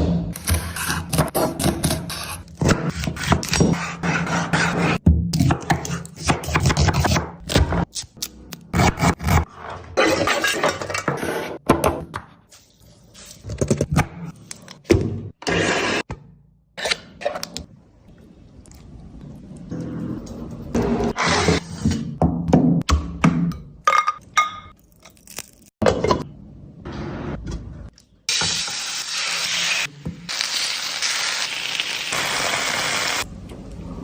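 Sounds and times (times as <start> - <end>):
utensils scraping pots and pans: 9.8 - 11.6.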